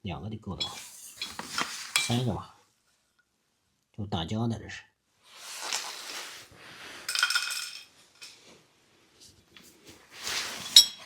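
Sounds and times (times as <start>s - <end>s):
metal hand tools clinking: 0.6s - 2.3s, 7.1s - 8.4s, 10.2s - 11.0s.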